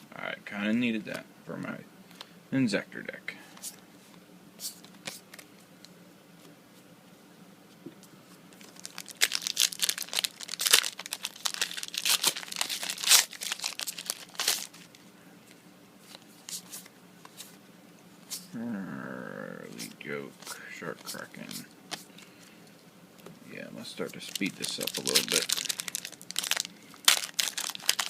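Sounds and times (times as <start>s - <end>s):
foil wrapper crackling: 8.6s - 15.0s, 24.1s - 28.0s.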